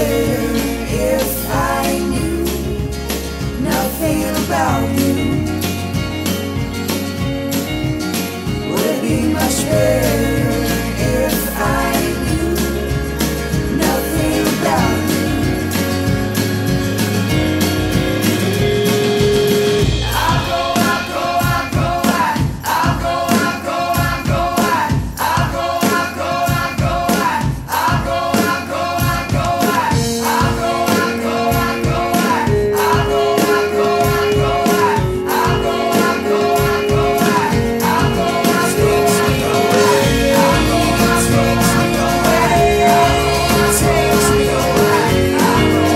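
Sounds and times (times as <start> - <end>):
layered singing over a beat: 0.0 - 6.4, 8.4 - 16.5, 19.8 - 45.9.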